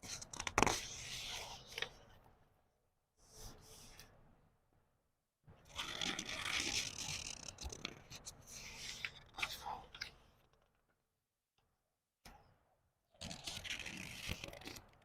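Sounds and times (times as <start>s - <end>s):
book page turning: 13.2s - 15.0s.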